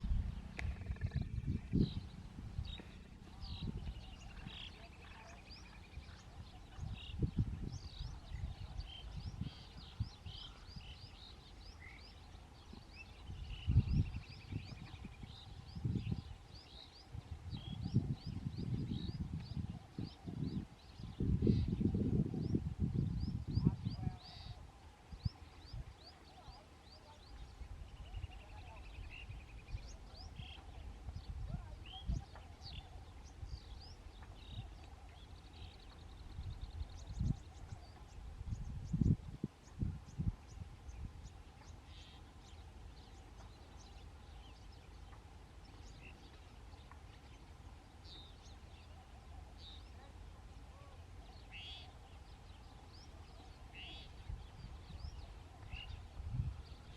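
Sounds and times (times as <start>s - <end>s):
low rumbling bursts: 0.0s - 4.7s
birds chirping and whistling: 0.0s - 16.9s
birds chirping: 0.0s - 56.9s.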